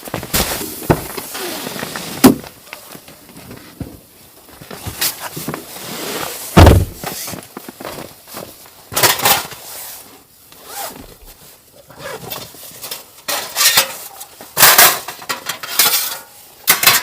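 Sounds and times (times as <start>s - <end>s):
rustling and handling: 0.0s - 16.5s
heavy thump: 6.6s - 7.1s.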